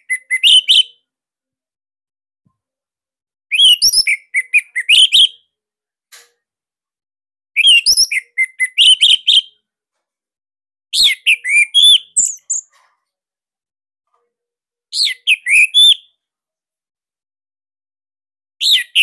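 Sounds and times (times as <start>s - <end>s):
thrush singing whistled notes: 3.5s - 5.3s, 7.6s - 9.5s, 15.0s - 16.1s.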